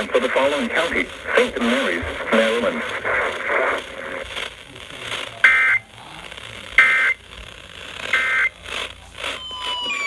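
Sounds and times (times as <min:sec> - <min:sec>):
radio hiss: 0:00.0 - 0:10.0
shrill two-tone data warble: 0:09.3 - 0:10.0.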